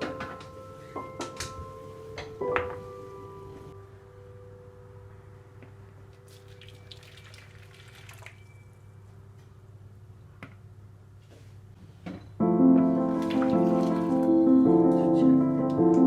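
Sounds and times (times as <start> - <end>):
water dripping and trickling: 6.2 - 8.6, 13.1 - 14.4
background music: 12.4 - 16.0.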